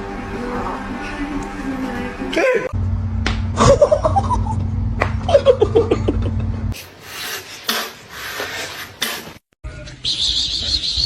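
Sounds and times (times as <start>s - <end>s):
steady low hum: 0.0s - 6.8s
person laughing: 3.6s - 6.6s.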